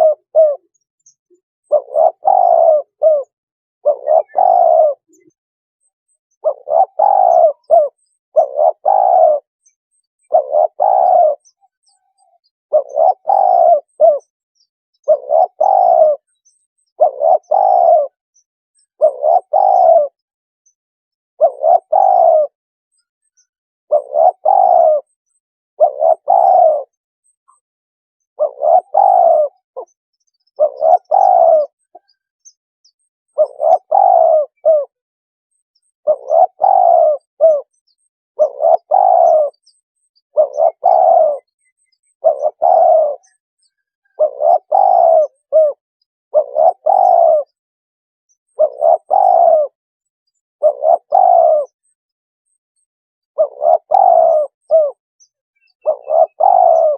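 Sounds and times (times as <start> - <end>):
dove cooing: 0.0 - 5.4, 6.4 - 9.5, 10.1 - 14.4, 15.0 - 18.2, 18.9 - 20.2, 21.4 - 22.6, 23.9 - 25.2, 25.8 - 27.0, 28.4 - 32.2, 33.3 - 35.0, 36.0 - 37.8, 38.4 - 47.6, 48.5 - 49.8, 50.6 - 51.8, 53.3 - 55.0, 55.6 - 56.9.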